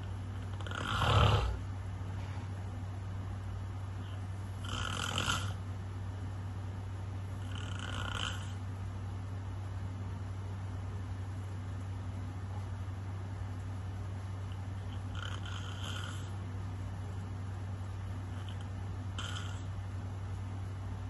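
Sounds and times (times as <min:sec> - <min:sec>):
steady low hum: 0:00.0 - 0:21.0
person snoring: 0:00.5 - 0:01.6, 0:04.6 - 0:05.6, 0:07.4 - 0:08.6, 0:15.1 - 0:16.3, 0:19.2 - 0:19.7.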